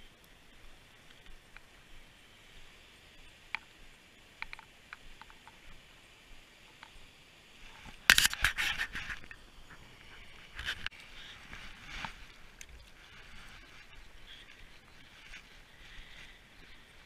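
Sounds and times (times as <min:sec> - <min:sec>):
faint clicks: 0:00.2 - 0:01.8, 0:03.2 - 0:05.8, 0:06.6 - 0:07.0, 0:07.6 - 0:17.0
gear scraping and rustling: 0:07.6 - 0:17.0.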